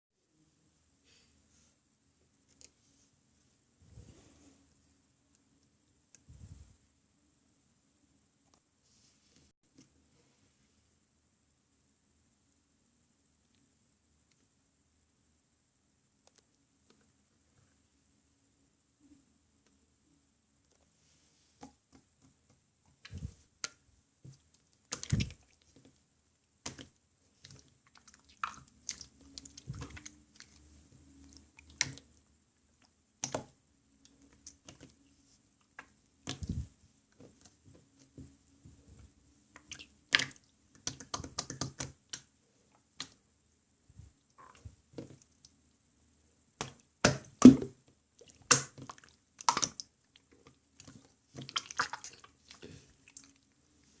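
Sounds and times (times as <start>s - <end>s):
slime squelching by hand: 23.0s - 26.0s, 26.6s - 32.1s, 38.8s - 42.2s, 46.6s - 54.0s.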